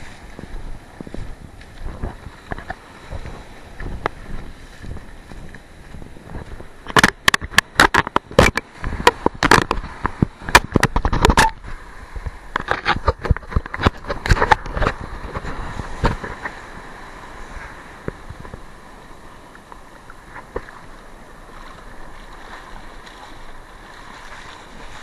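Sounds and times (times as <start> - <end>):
sharp clicks and knocks: 6.9 - 11.6.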